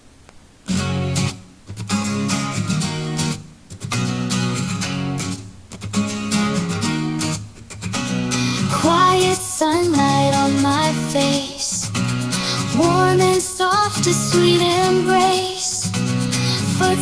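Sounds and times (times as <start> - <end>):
strummed guitar chords: 0.7 - 17.0
voice-like melody: 8.6 - 11.8.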